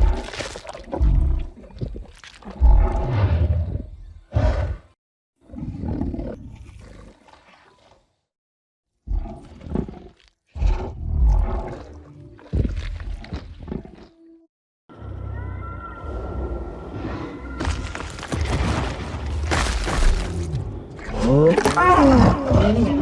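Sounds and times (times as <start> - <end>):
giant ape roaring: 20.2 - 23.0.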